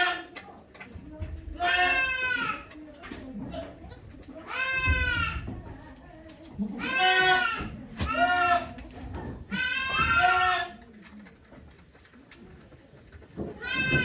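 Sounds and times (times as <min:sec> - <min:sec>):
goat bleating: 0:00.0 - 0:00.3, 0:01.6 - 0:02.7, 0:03.5 - 0:05.5, 0:06.6 - 0:08.8, 0:09.5 - 0:10.8, 0:13.6 - 0:14.0.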